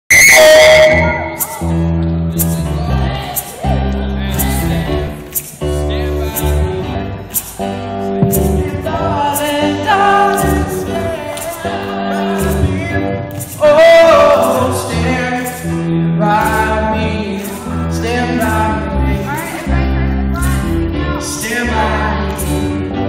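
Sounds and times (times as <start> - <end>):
church choir singing: 7.1 - 15.6.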